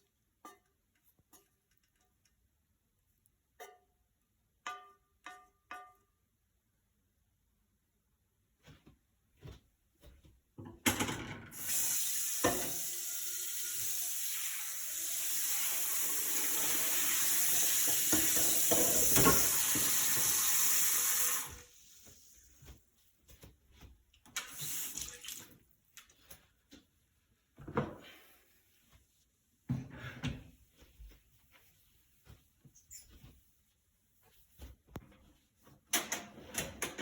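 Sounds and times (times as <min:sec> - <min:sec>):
tap running into sink: 0:16.3 - 0:21.6.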